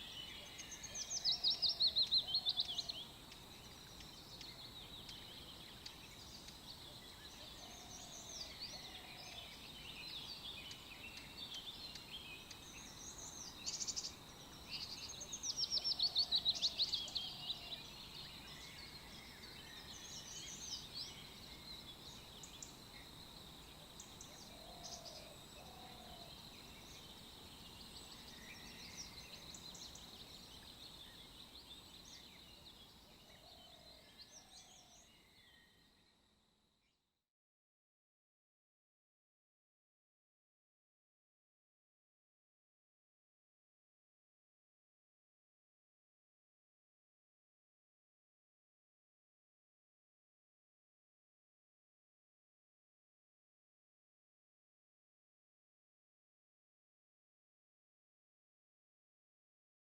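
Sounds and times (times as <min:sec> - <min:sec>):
birds chirping and singing: 0:00.0 - 0:35.8.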